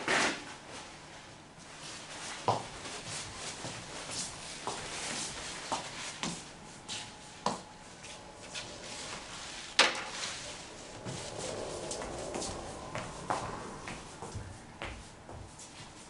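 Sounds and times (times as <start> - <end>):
faint scraping: 8.0 - 15.7.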